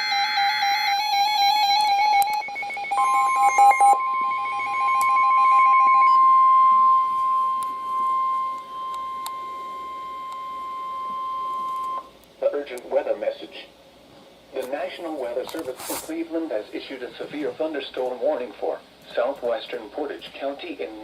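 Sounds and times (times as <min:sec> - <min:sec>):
radio alarms beeping and warbling: 0:00.0 - 0:12.1
steady warning alarm tone: 0:00.0 - 0:12.2
screeching digital header burst: 0:02.5 - 0:11.8.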